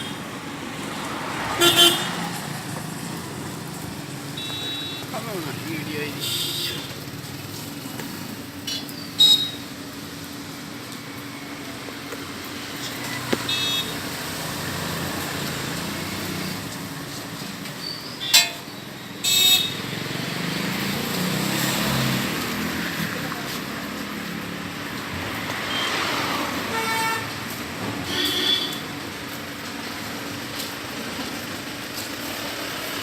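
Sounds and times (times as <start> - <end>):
road traffic: 0.0 - 33.0
vehicle horn honks: 1.6 - 2.1, 4.4 - 5.0, 6.2 - 6.9, 28.1 - 28.8.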